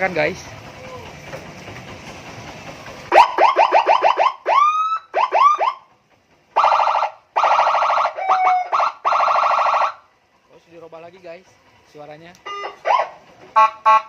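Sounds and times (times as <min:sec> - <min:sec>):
motorcycle siren wailing and warbling: 0:03.1 - 0:05.9, 0:06.6 - 0:10.0, 0:12.4 - 0:14.0.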